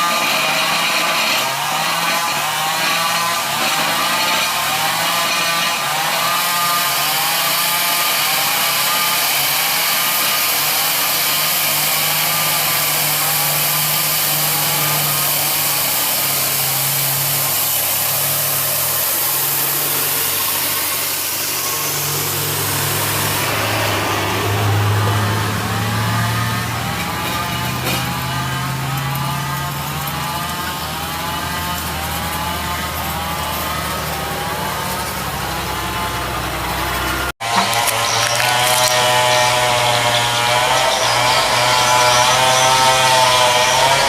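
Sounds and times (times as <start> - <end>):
truck diesel engine under load: 12.0 - 44.0.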